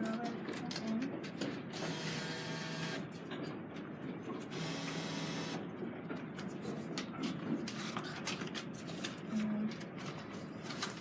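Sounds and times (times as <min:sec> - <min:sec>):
vending machine motor whirring: 0:01.7 - 0:03.1, 0:04.5 - 0:05.7.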